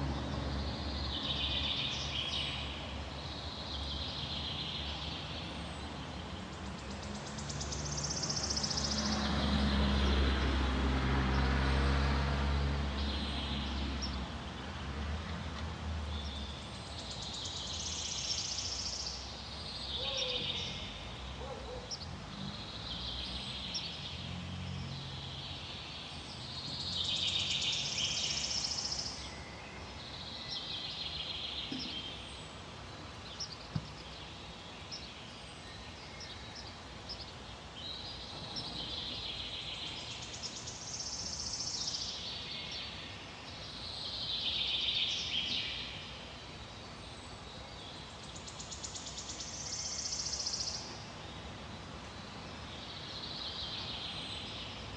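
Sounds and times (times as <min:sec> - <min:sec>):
songbirds singing: 0:00.0 - 0:54.9
steady background hiss: 0:22.1 - 0:54.9.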